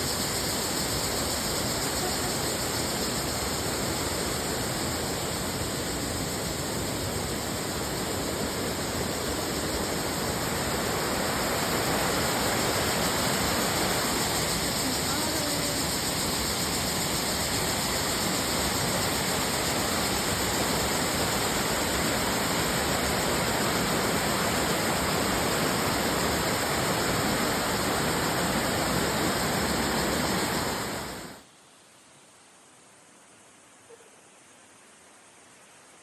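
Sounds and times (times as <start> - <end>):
waterfall rushing: 18.9 - 31.4.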